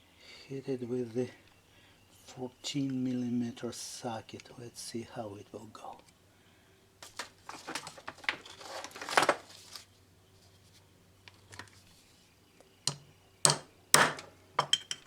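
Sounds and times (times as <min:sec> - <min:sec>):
metal tapping on socket: 0:12.9 - 0:15.0
sharp metal knocks: 0:12.9 - 0:15.0.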